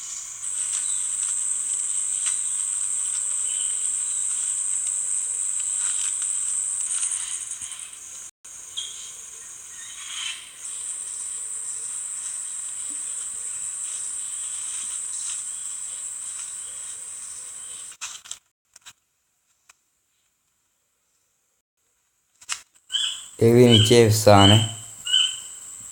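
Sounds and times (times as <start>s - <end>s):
high-pitched insect drone: 0.0s - 17.8s.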